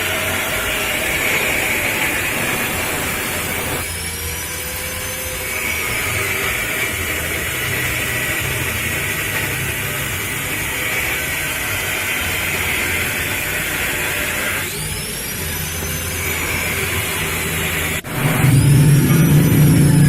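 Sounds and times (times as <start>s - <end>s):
loud even hiss: 0.5s - 3.9s, 18.0s - 20.0s
motorcycle engine rumbling: 0.5s - 3.9s, 18.0s - 20.0s.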